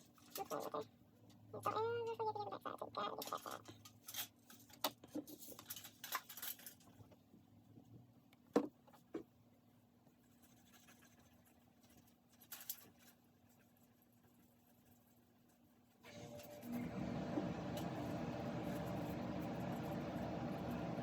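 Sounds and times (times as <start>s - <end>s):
faint steady hum: 13.3s - 21.0s.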